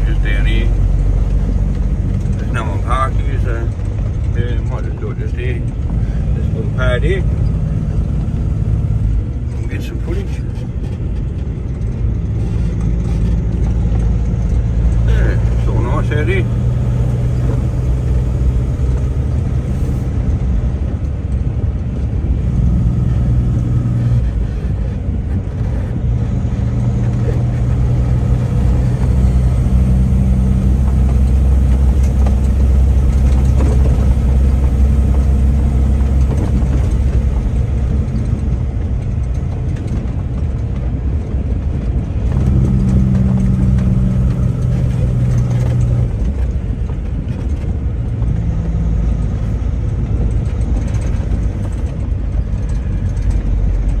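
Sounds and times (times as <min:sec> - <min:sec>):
vehicle engine running: 0:00.0 - 0:54.0.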